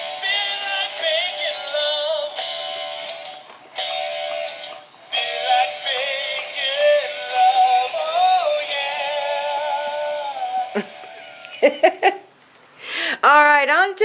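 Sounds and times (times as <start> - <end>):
toy singing through tinny speaker: 5.2 - 10.6.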